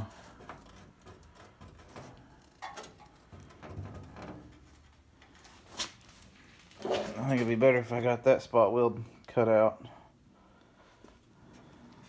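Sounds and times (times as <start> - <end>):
sheet metal knocks and rattles: 0.0 - 4.8.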